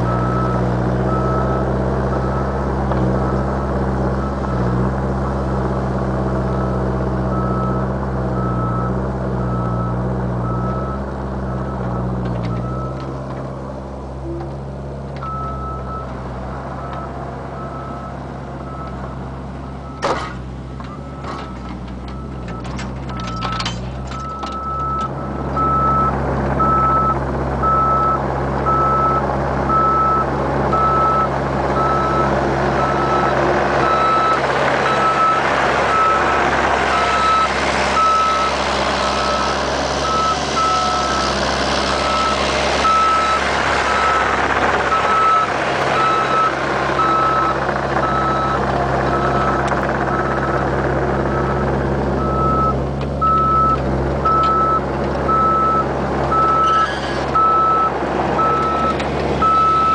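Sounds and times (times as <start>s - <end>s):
excavator diesel engine running: 0.0s - 59.9s
beeping travel alarm: 52.2s - 59.9s.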